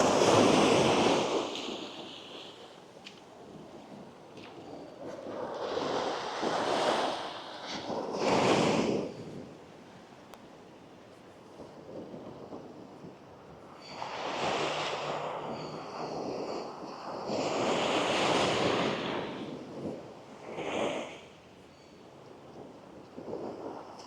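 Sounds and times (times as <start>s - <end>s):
gentle waves washing up beach: 0.0s - 9.3s, 13.7s - 21.5s.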